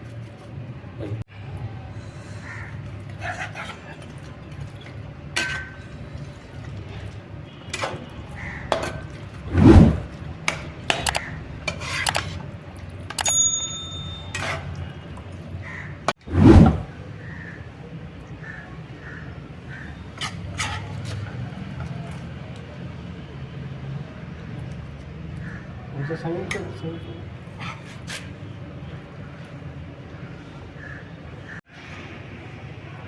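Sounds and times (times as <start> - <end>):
metal utensils clinking against pot: 13.1 - 15.0
ringing metallic clang: 13.2 - 14.6.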